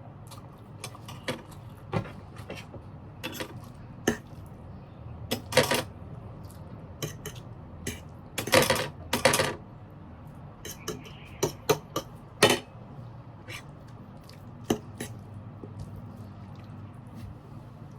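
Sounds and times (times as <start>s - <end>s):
cutlery scraping a dish: 0.8s - 4.2s, 7.0s - 9.6s, 10.6s - 12.7s, 14.6s - 15.2s.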